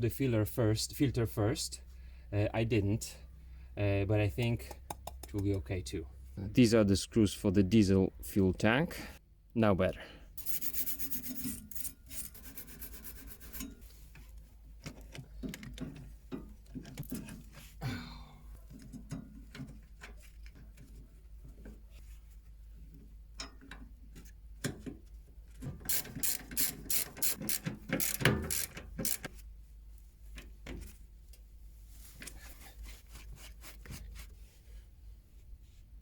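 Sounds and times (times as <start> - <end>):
ratchet wrench clicking: 10.4 - 11.9, 25.9 - 29.3.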